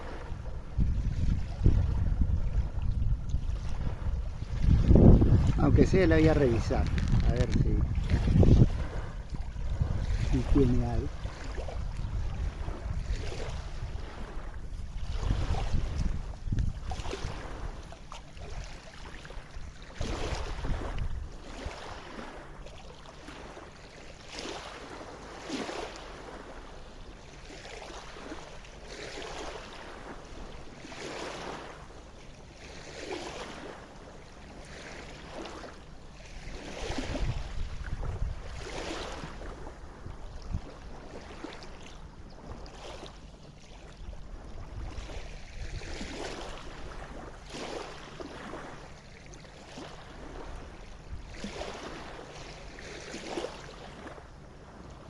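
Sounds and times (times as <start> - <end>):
wind rumbling on microphone: 0.0 - 22.6, 36.2 - 49.1, 49.7 - 55.0
river waves lapping bank: 0.0 - 55.0.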